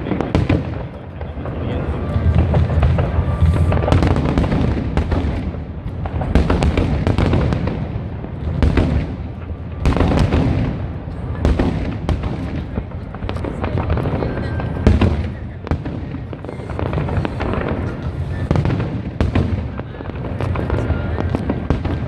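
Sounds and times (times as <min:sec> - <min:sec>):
fireworks bangs and crackles: 0:00.0 - 0:22.0
low rumble: 0:01.2 - 0:05.0.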